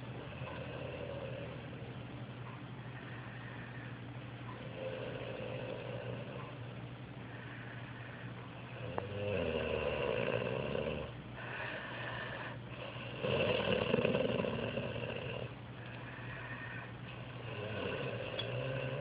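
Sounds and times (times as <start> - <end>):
quiet breathing: 0.0 - 19.0
man snoring: 4.7 - 6.4, 8.7 - 11.2, 12.4 - 15.6, 17.3 - 19.0.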